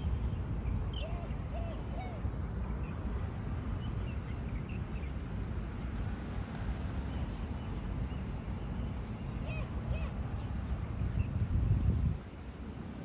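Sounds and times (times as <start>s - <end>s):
steady low rumble: 4.3s - 9.2s.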